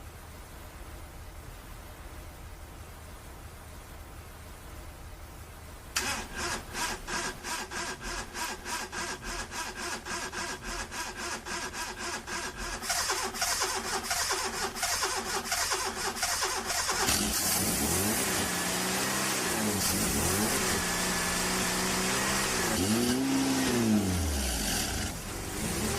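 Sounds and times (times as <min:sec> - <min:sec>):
car engine cranking on starter: 0:06.0 - 0:25.9
car engine revving: 0:06.0 - 0:25.9.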